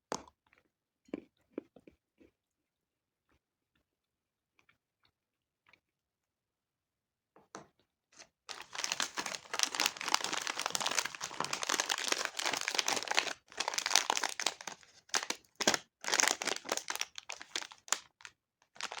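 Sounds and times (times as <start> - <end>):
plastic candy wrapper crinkling: 8.5 - 19.0.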